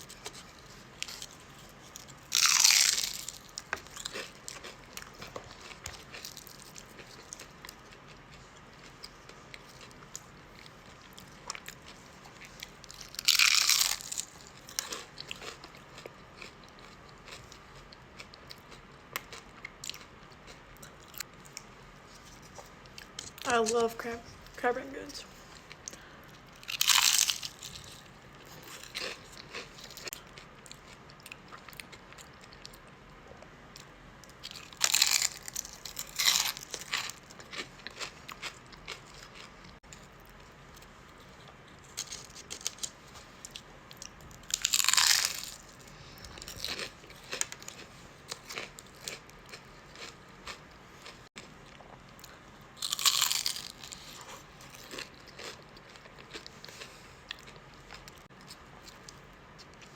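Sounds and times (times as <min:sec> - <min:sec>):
crackly chewing: 0:00.0 - 0:23.8, 0:25.4 - 0:59.9
crisp crunchy bites: 0:01.0 - 0:07.8, 0:11.1 - 0:17.6, 0:26.6 - 0:32.7, 0:34.3 - 0:39.5, 0:41.9 - 0:51.2, 0:52.2 - 0:59.2.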